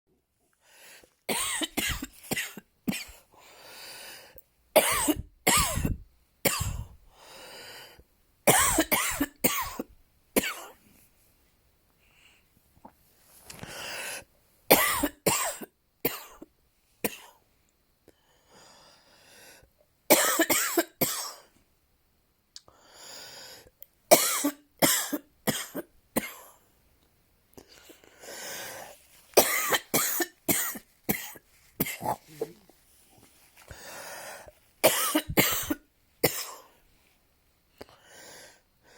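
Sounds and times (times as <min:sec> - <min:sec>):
person coughing: 0:01.3 - 0:03.2, 0:04.8 - 0:07.0, 0:08.5 - 0:10.7, 0:14.7 - 0:16.4, 0:20.1 - 0:21.5, 0:24.1 - 0:26.5, 0:29.4 - 0:32.7, 0:34.8 - 0:36.7.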